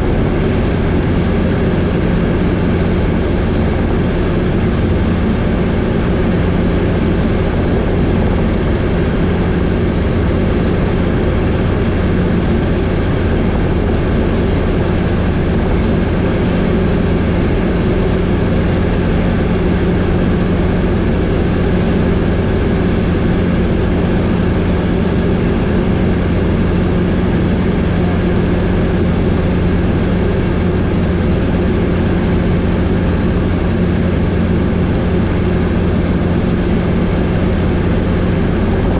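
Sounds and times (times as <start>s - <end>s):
helicopter engine and rotor drone: 0.0s - 38.9s.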